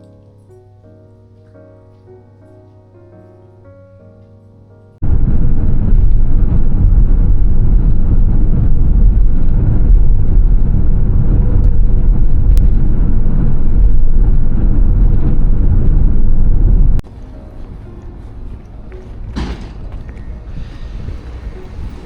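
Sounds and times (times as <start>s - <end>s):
vehicle engine low rumble: 5.0s - 22.0s.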